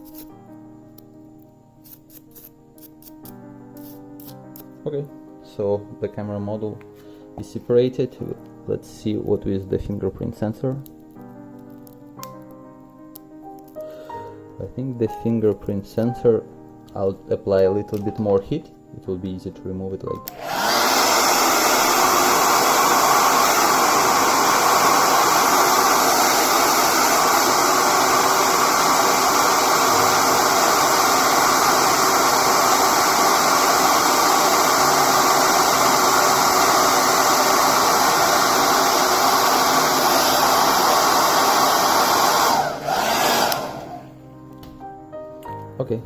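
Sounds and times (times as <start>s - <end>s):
hair dryer blowing: 20.3s - 44.2s.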